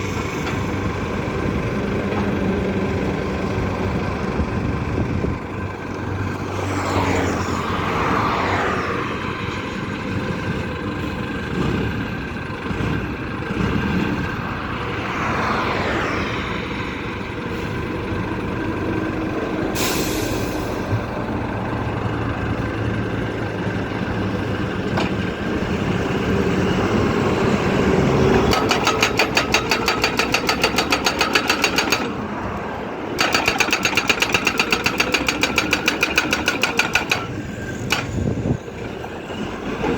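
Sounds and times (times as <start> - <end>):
pile driver engine running: 0.0 - 39.9
short hiss: 19.8 - 20.8
hammer striking: 28.4 - 32.2, 33.2 - 38.2.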